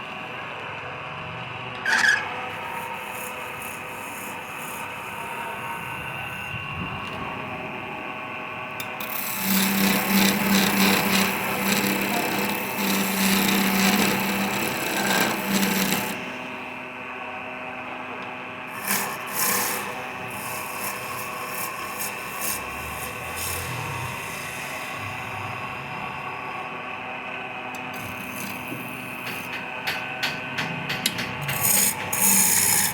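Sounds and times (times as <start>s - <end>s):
wood lathe motor whine: 1.8s - 32.9s
tool scraping spinning wood: 9.0s - 16.7s, 18.7s - 26.7s, 27.8s - 32.9s.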